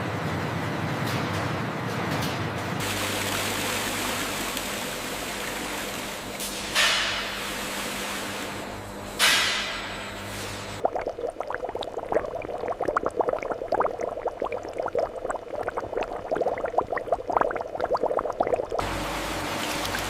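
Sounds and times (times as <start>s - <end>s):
liquid rushing: 2.8s - 8.7s, 10.8s - 20.0s
thick liquid bubbling and popping: 10.8s - 18.9s.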